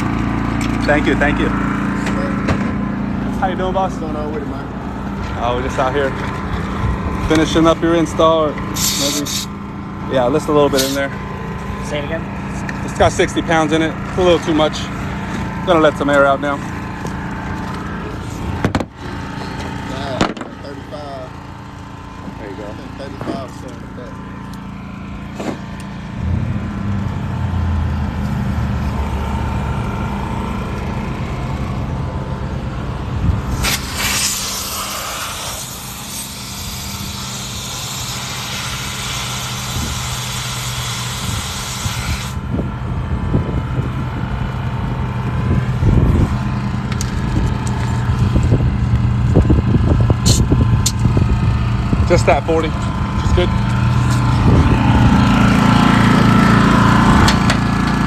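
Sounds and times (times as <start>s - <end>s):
generator engine running: 0.0s - 58.0s
compressed air hissing at tire valve: 8.7s - 9.6s, 10.7s - 11.1s, 33.4s - 42.4s, 50.2s - 51.0s.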